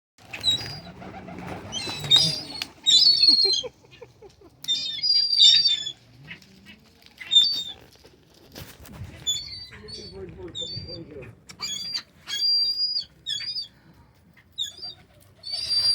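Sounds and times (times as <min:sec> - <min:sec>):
birds chirping: 0:00.2 - 0:07.9, 0:09.2 - 0:15.9
wings flapping: 0:00.2 - 0:11.0.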